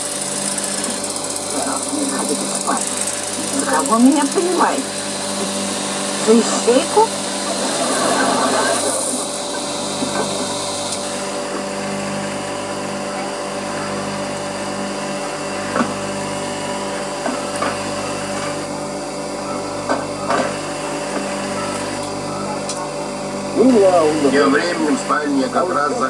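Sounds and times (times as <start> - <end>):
grinding rubbing noise: 0.0 - 14.0
grinding machine motor hum: 0.0 - 26.0.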